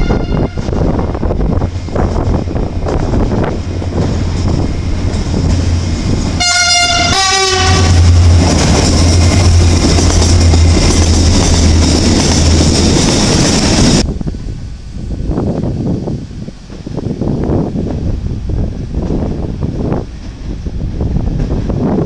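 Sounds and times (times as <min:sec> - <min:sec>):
train horn: 0:00.0 - 0:01.2, 0:06.4 - 0:08.5
train rumbling on rails: 0:00.0 - 0:22.0.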